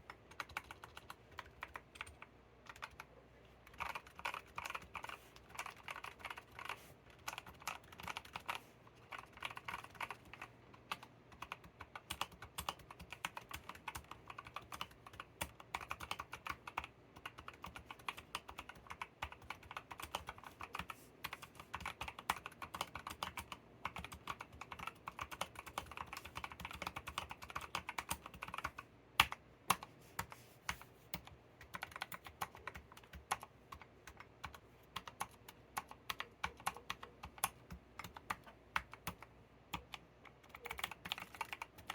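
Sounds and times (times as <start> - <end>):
typing on mechanical keyboard: 0.0 - 41.9.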